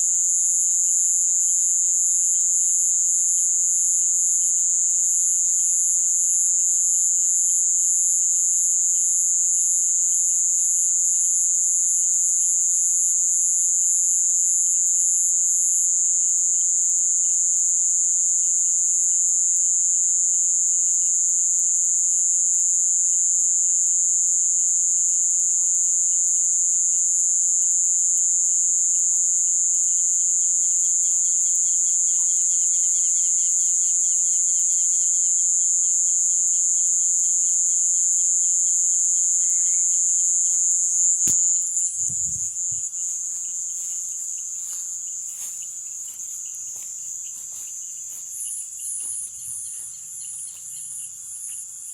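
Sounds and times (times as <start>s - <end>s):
high-pitched insect trill: 0.0s - 51.9s
pulsing insect call: 0.0s - 51.9s
frogs chirping: 25.4s - 51.9s.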